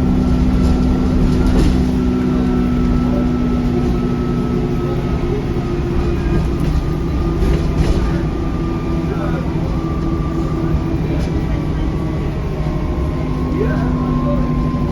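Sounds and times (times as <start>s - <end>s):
diesel bus engine rumbling: 0.0s - 14.9s
high turbo whine: 0.0s - 14.9s.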